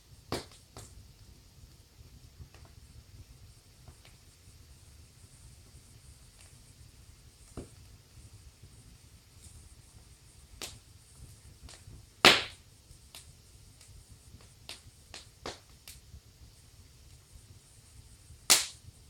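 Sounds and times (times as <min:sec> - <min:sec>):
fire crackling: 0:00.0 - 0:19.0
sharp pops of fire: 0:00.1 - 0:19.0.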